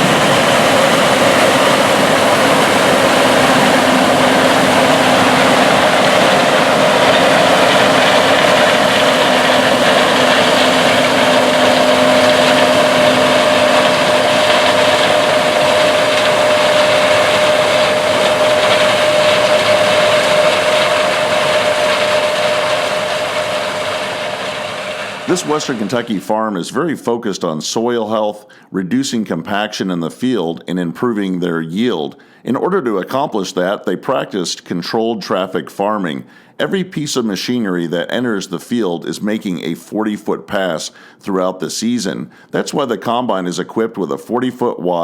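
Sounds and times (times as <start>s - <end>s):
faint steady whine: 0.0s - 26.3s
combine harvester running: 0.0s - 26.4s.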